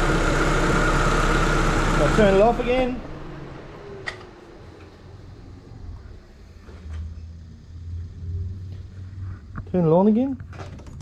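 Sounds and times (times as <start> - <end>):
faint low rumble: 2.6 - 10.5.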